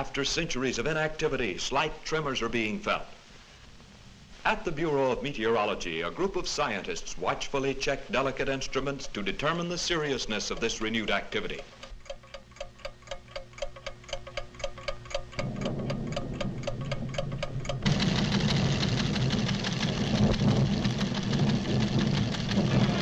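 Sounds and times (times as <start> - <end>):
instrument ticking fast: 8.4 - 22.5
loud low rumbling: 15.4 - 23.0.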